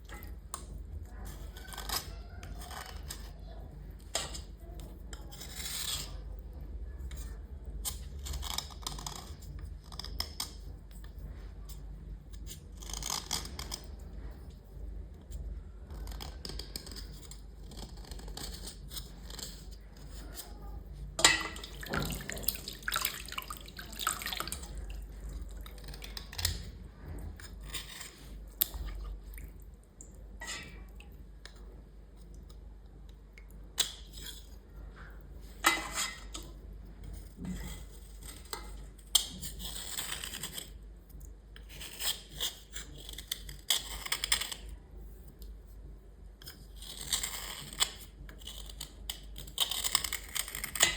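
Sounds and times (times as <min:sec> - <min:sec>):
wet brushing and scraping: 0:16.7 - 0:32.4, 0:33.8 - 0:44.2.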